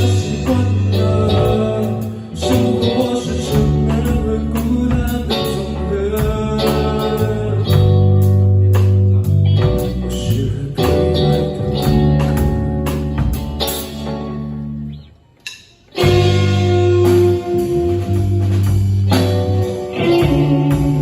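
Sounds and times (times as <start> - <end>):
person singing: 0.0 - 13.0, 16.0 - 21.0
bass notes: 0.0 - 21.0
drum kit: 0.0 - 21.0
electric guitars: 0.0 - 21.0.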